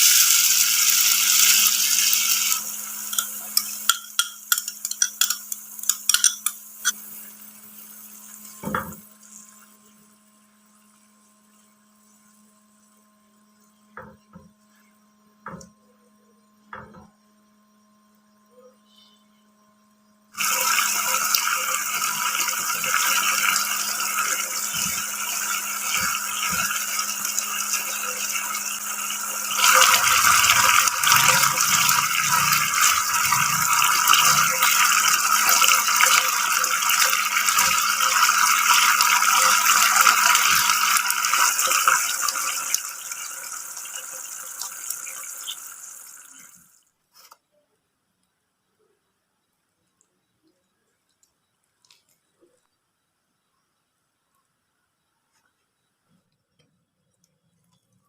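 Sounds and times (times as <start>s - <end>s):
doughnuts sizzling in hot oil: 0.0s - 13.1s, 20.4s - 46.8s.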